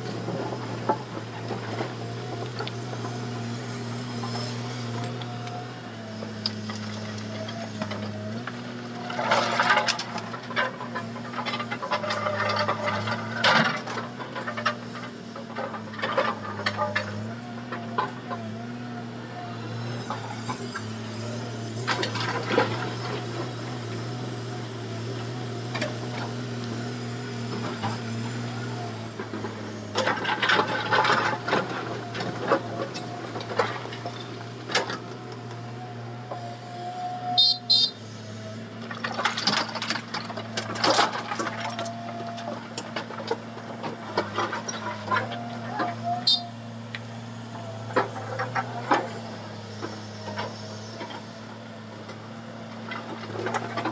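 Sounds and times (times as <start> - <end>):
diesel engine humming: 0.0 - 53.9
clattering and scraping: 6.4 - 18.4, 29.1 - 35.2, 38.8 - 46.5.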